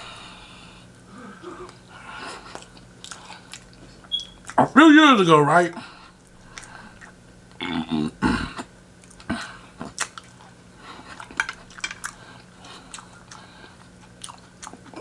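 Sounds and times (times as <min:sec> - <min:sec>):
person chewing fried chicken: 0:01.6 - 0:04.6, 0:06.2 - 0:07.7, 0:08.6 - 0:15.0
wet mouth clicks and smacks: 0:09.9 - 0:10.4.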